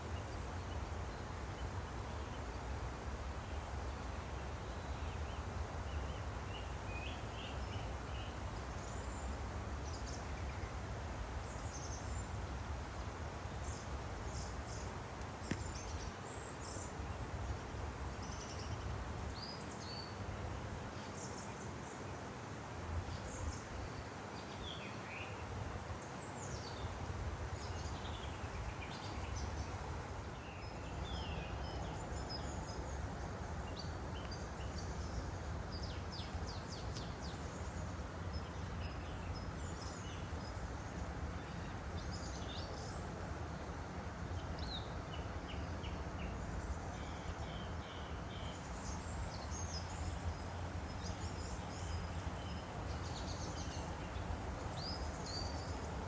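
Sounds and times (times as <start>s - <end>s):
stream flowing: 0.0s - 56.0s
small birds singing: 13.4s - 20.2s, 23.0s - 56.0s.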